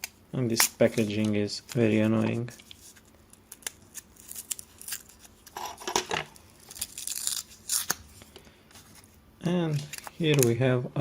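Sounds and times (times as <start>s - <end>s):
plastic blister packaging tearing: 0.0s - 5.6s, 6.2s - 8.2s.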